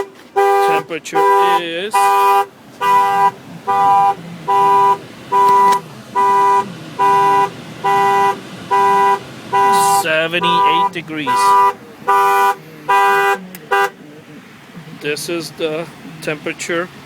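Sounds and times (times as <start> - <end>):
two-tone car horn honking: 0.0 - 14.0.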